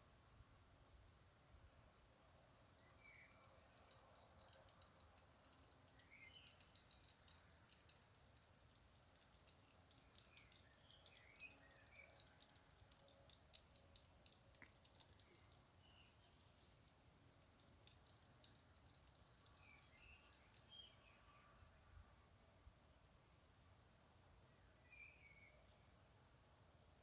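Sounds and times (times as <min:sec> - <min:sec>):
rapid high clicking: 0:02.8 - 0:20.8.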